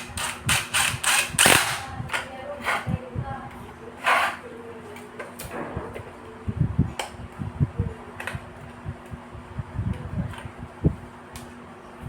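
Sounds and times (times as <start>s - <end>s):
steady hum: 0.0s - 12.0s
sharp clicks: 0.2s - 1.8s.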